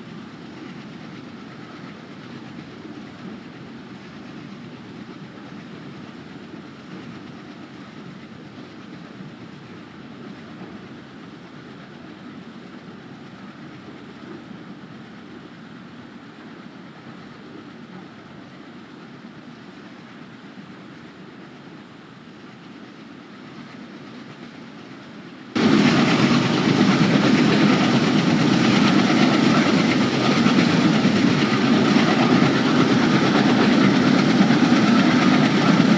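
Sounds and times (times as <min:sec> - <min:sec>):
diesel locomotive engine rumbling: 0:25.6 - 0:35.9.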